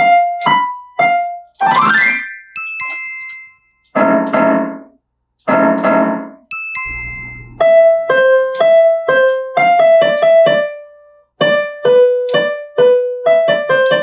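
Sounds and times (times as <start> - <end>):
piano single-note melody: 6.9 - 8.6.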